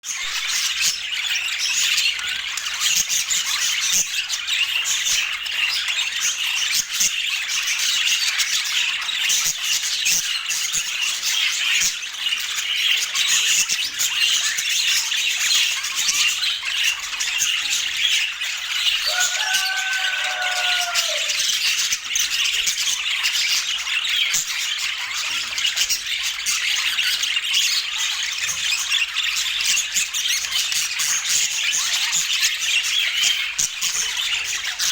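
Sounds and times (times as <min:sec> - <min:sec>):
budgies chirping and warbling: 0:00.0 - 0:34.9
low drawn-out bird call: 0:19.1 - 0:21.5.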